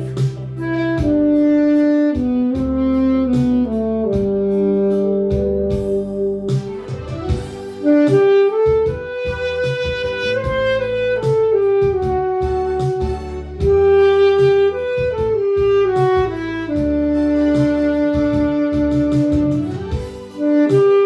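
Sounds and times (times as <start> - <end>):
backing track with bass and beat: 0.0 - 21.0
saxophone melody: 0.0 - 21.0.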